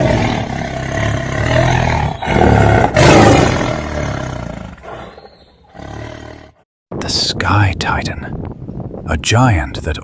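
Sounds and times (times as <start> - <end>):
rough animal-like roar: 0.0 - 6.6.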